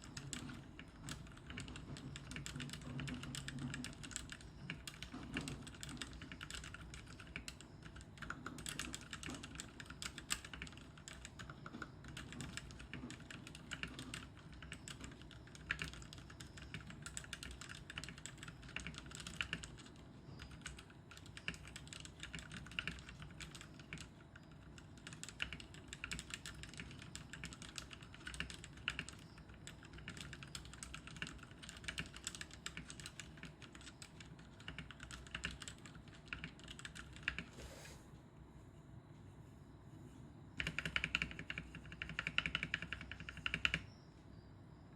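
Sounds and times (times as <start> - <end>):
fast typing on mechanical keyboard: 0.0 - 37.5, 40.6 - 44.0.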